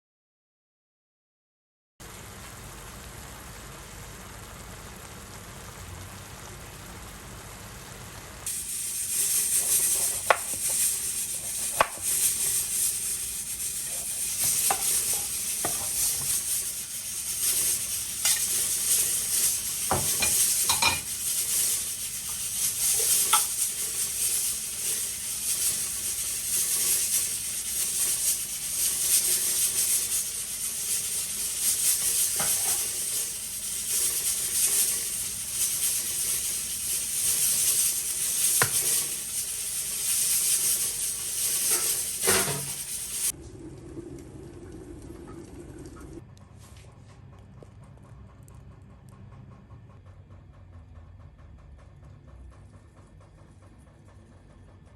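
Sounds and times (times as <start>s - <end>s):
food sizzling in a pan: 2.0s - 43.4s
utensil scraping a pan: 8.5s - 43.3s.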